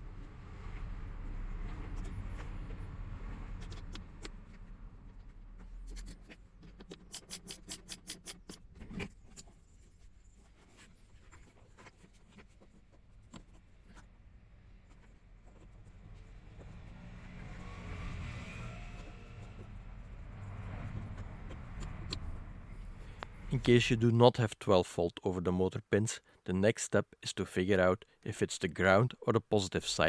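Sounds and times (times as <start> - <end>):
small clicks and rubbing: 3.5 - 16.9.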